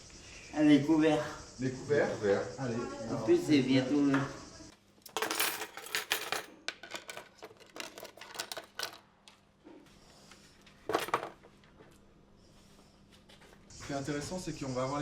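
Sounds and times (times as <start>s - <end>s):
metal cutlery clinking: 5.1s - 9.0s.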